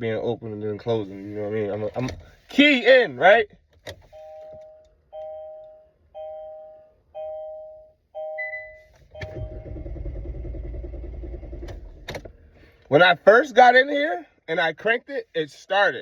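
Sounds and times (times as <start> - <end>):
car key warning chime: 4.1 - 9.7
starter cranking engine: 9.2 - 12.4.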